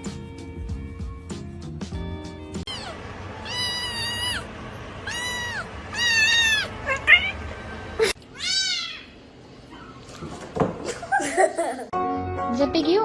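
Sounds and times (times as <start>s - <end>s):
cat meowing: 2.7s - 7.5s, 8.3s - 9.1s.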